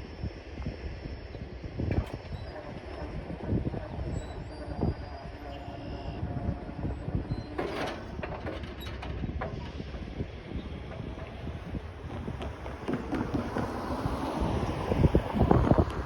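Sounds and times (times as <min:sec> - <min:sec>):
freight cars rumbling on rails: 0:00.1 - 0:16.0
rattling of freight cars: 0:01.6 - 0:16.0
wheel clacks: 0:07.6 - 0:16.0.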